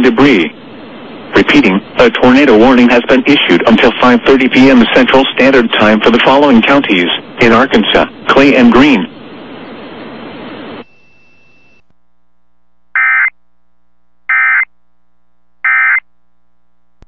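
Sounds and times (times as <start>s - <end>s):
static hiss: 0.0s - 11.9s.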